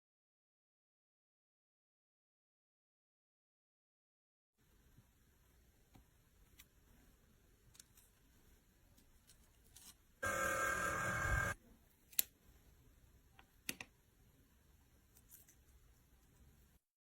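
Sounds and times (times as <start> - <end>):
loud electronic ringing tone: 10.2 - 11.6.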